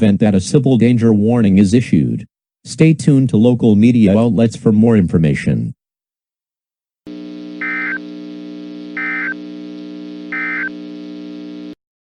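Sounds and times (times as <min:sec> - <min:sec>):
buzzy digital data tones: 0:07.1 - 0:11.8.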